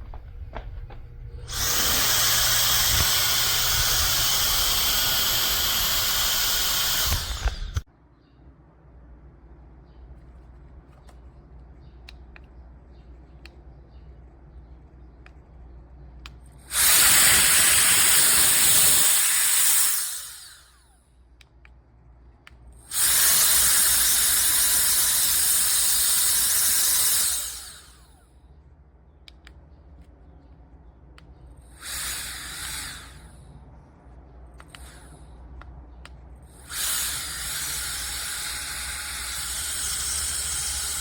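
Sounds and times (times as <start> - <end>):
motor whine spinning down: 0.0 - 7.8
electric air duster blowing: 1.4 - 7.9, 16.7 - 20.8, 22.9 - 28.1, 31.8 - 33.3, 36.6 - 41.0.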